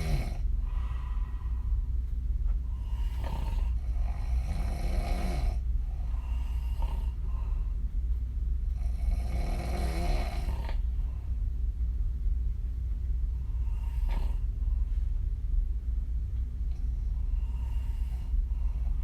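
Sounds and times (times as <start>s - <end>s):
woman snoring with lip blowing: 0.0s - 0.4s, 2.8s - 5.6s, 8.8s - 10.8s.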